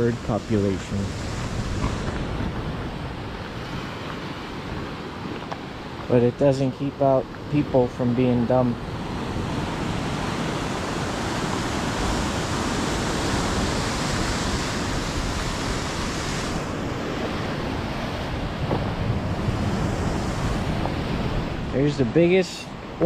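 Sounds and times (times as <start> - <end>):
wind buffeting microphone: 0.0 - 6.4, 7.2 - 23.0
ocean surf: 0.0 - 23.0.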